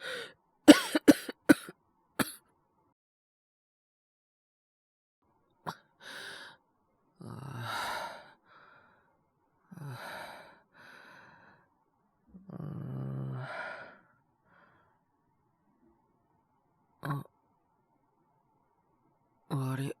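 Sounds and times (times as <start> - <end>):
man coughing harshly: 0.7 - 2.4.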